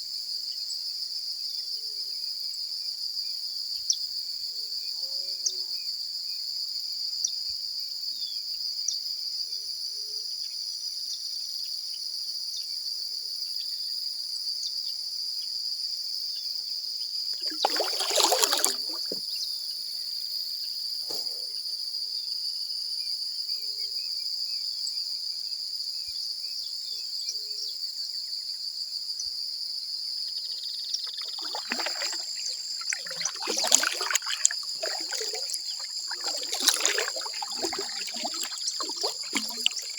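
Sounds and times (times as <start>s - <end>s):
paddle strokes splashing water: 17.4s - 19.2s, 31.1s - 39.9s
high-pitched insect chorus: 17.5s - 19.2s, 31.1s - 39.9s.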